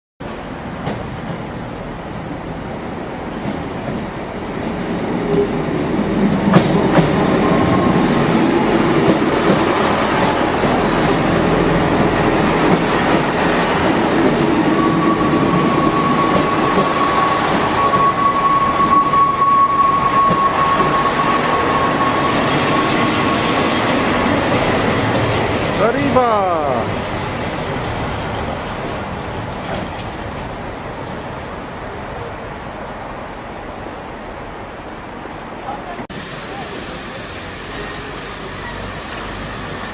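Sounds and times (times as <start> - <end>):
train running on rails: 0.2 - 39.9
steady high squeal: 7.2 - 10.4, 13.3 - 25.0.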